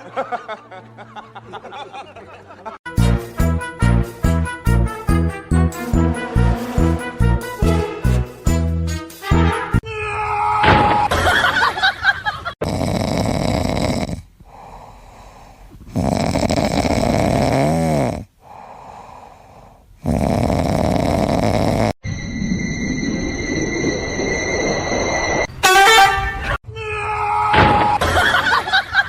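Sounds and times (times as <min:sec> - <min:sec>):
steady high tone: 0:05.2 - 0:08.4, 0:22.0 - 0:25.6
loud snoring: 0:12.6 - 0:14.8, 0:15.8 - 0:19.3, 0:20.0 - 0:22.0.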